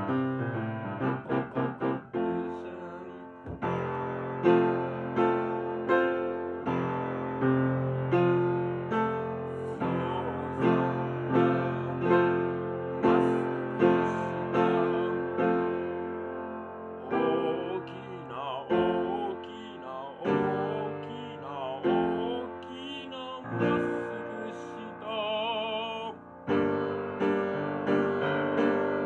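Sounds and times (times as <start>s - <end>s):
piano chords: 0.0s - 29.0s.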